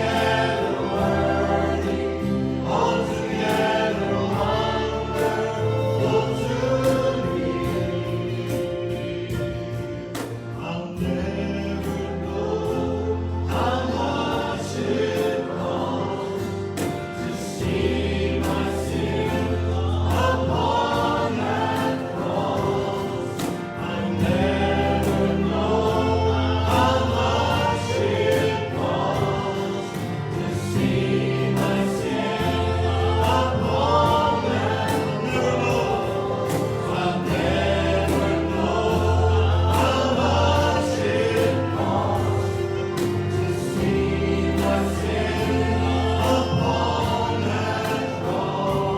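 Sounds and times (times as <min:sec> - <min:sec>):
bass line: 0:00.0 - 0:48.9
group of voices singing: 0:00.0 - 0:48.9
percussion strikes: 0:00.0 - 0:48.9.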